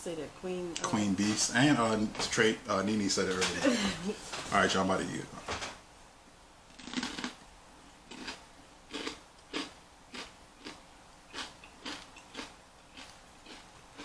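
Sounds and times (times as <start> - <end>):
crunchy chewing: 6.7 - 7.4, 8.1 - 14.0.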